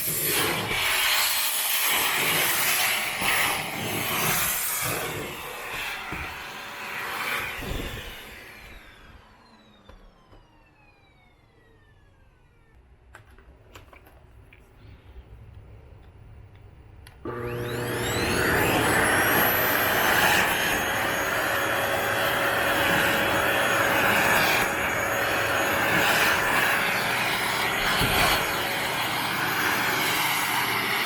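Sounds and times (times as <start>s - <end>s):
vacuum nozzle rubbing on edges: 0.0s - 8.8s, 17.3s - 31.0s
vacuum cleaner running: 0.0s - 12.7s, 17.2s - 31.0s.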